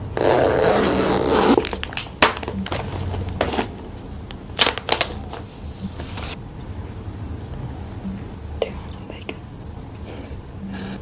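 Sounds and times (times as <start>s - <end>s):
makeup products clicking and crackling: 1.6s - 3.6s, 4.2s - 5.5s.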